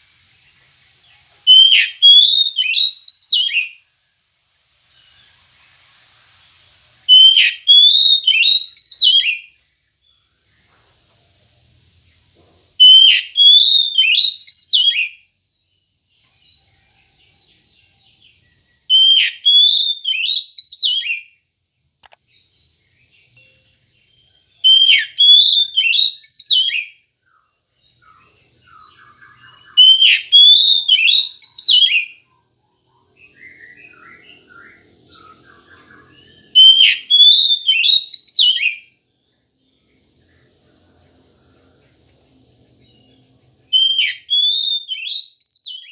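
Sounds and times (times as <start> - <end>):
bird singing rapid notes: 0.6 - 3.7, 7.1 - 10.6, 12.1 - 45.9.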